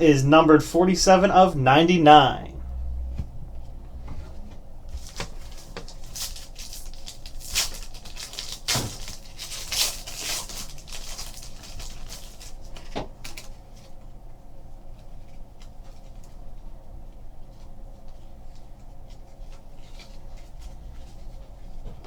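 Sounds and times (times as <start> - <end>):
plastic pack crinkling and tearing: 5.0 - 13.6.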